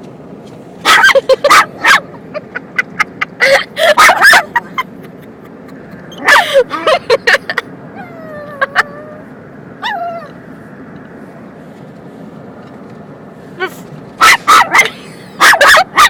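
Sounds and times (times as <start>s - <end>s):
dog yipping and barking: 0.8s - 2.2s, 3.8s - 4.8s, 6.1s - 7.0s, 9.8s - 10.4s, 13.6s - 16.0s.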